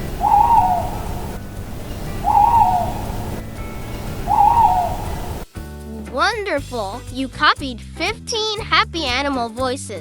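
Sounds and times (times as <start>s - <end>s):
owl hooting: 0.0s - 5.4s.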